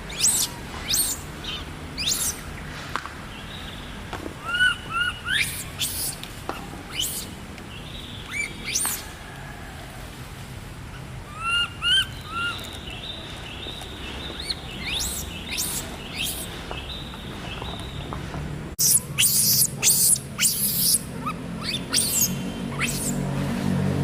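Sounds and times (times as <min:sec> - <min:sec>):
high chirping animal calls: 0:00.0 - 0:02.5, 0:04.4 - 0:06.2, 0:06.9 - 0:09.2, 0:11.0 - 0:18.1, 0:18.8 - 0:23.3.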